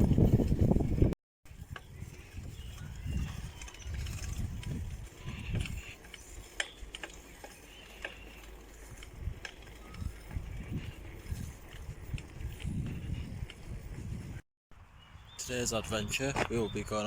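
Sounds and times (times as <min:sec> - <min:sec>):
wind buffeting microphone: 0:00.0 - 0:06.5, 0:08.8 - 0:14.4.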